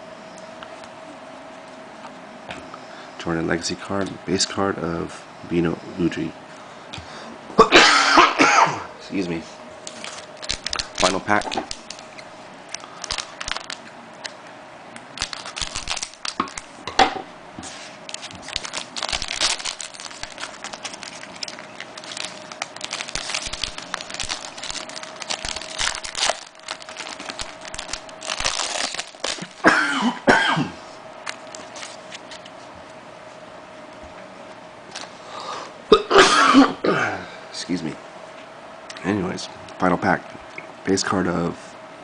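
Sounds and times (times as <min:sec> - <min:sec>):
faint steady hum: 0:00.0 - 0:42.0
person coughing: 0:07.6 - 0:08.9, 0:29.6 - 0:30.8, 0:35.9 - 0:37.4
card pack tearing and crinkling: 0:09.9 - 0:13.8, 0:15.1 - 0:16.7, 0:18.1 - 0:29.6, 0:31.2 - 0:32.5.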